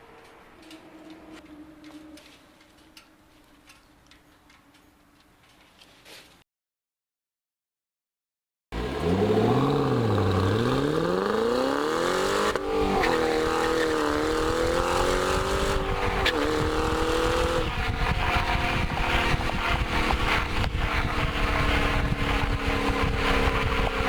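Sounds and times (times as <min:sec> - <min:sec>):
car engine revving: 0:08.8 - 0:24.0.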